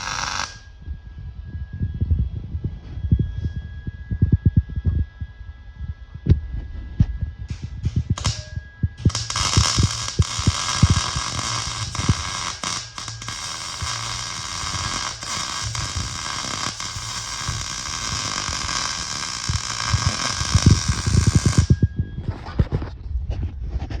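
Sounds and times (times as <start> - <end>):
loud hissing noise: 0.0 - 0.6, 8.1 - 21.8.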